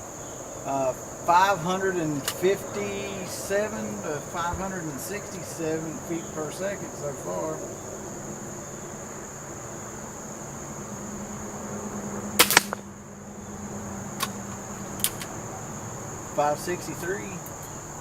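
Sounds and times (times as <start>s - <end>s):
air pistol shot: 12.4s - 12.8s
faint clicks: 14.2s - 15.5s.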